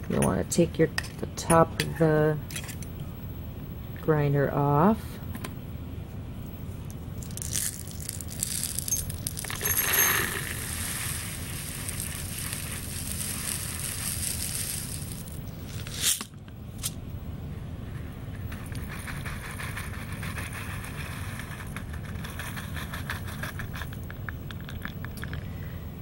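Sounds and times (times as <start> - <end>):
salt pouring through funnel: 7.2 - 16.2.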